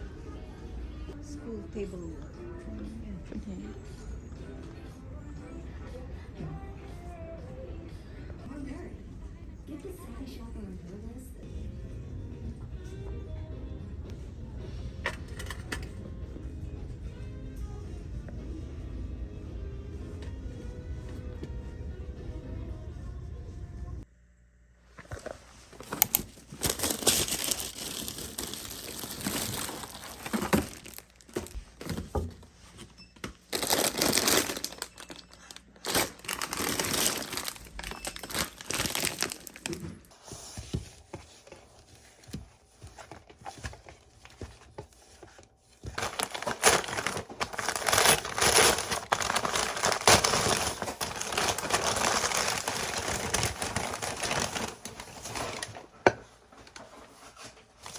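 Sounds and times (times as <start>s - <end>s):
plastic or paper crinkling: 25.2s - 32.2s, 33.4s - 55.9s, 56.9s - 57.9s.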